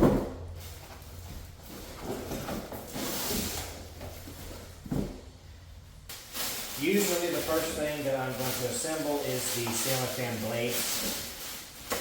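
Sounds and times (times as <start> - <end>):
packaging rustling: 6.1 - 12.0.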